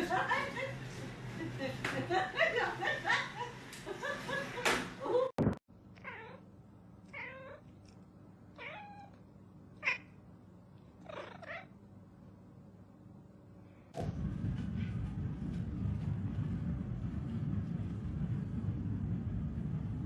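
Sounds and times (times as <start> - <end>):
cat meowing: 6.0 - 6.4, 7.1 - 7.7, 8.5 - 9.2, 9.8 - 10.2, 11.0 - 11.7.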